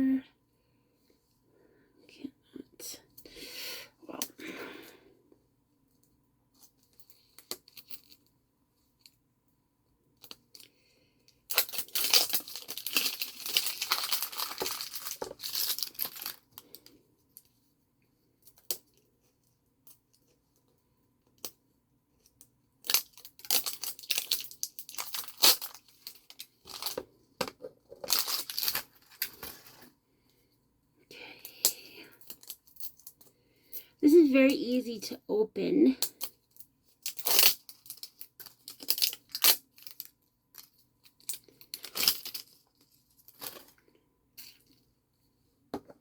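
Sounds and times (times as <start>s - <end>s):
plastic wrapping tearing and crinkling: 11.5s - 16.4s, 22.8s - 27.0s, 28.0s - 29.8s.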